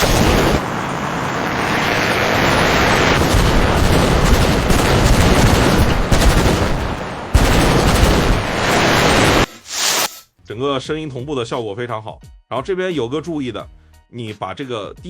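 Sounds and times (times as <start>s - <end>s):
gunfire-like crackling: 0.0s - 0.8s, 2.4s - 10.1s
loud blast: 0.0s - 0.9s, 2.9s - 10.1s
explosions: 0.0s - 10.2s.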